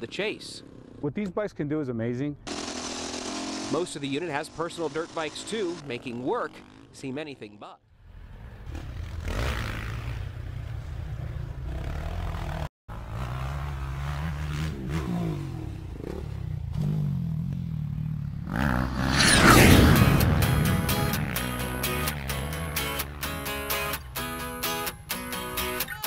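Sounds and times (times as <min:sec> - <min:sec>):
dirt bike engines revving: 0:00.0 - 0:01.4, 0:02.4 - 0:07.2, 0:08.2 - 0:26.0
rush of sound: 0:18.9 - 0:22.5.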